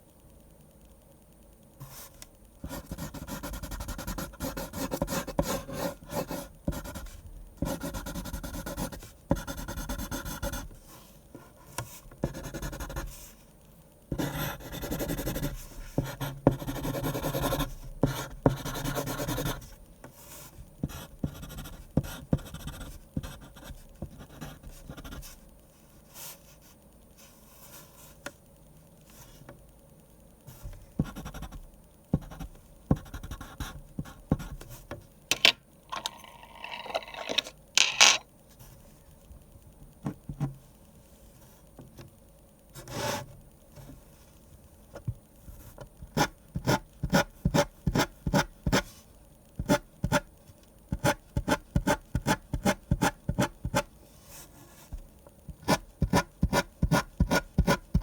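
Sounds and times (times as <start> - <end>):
pen scratching on paper: 14.2 - 19.6, 20.9 - 25.2.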